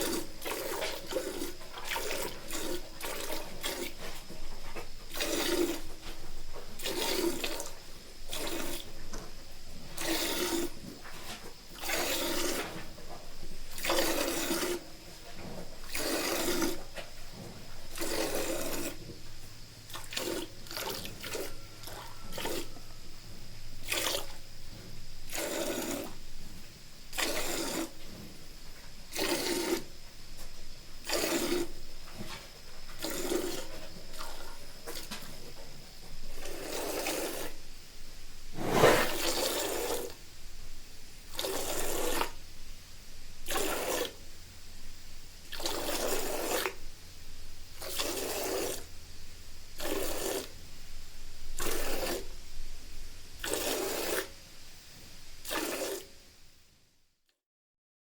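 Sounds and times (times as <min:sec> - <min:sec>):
milk squirting into a pail: 0:00.0 - 0:04.1, 0:05.1 - 0:05.9, 0:06.8 - 0:07.7, 0:08.3 - 0:08.9, 0:10.0 - 0:10.8, 0:11.4 - 0:12.8, 0:13.7 - 0:14.8, 0:15.8 - 0:16.8, 0:17.9 - 0:19.0, 0:19.9 - 0:22.8, 0:23.8 - 0:24.4, 0:25.3 - 0:26.2, 0:27.1 - 0:27.9, 0:29.1 - 0:29.9, 0:31.0 - 0:31.7, 0:33.0 - 0:35.4, 0:36.4 - 0:37.6, 0:38.6 - 0:40.2, 0:41.3 - 0:42.4, 0:43.4 - 0:44.2, 0:45.5 - 0:46.8, 0:47.8 - 0:48.9, 0:49.8 - 0:50.5, 0:51.6 - 0:52.3, 0:53.4 - 0:54.3, 0:55.4 - 0:56.1.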